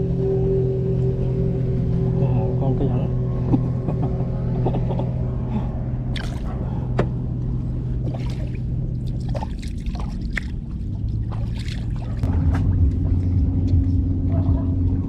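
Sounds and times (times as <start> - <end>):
boat engine droning: 0.0 - 15.0
water splashing and lapping: 5.5 - 15.0.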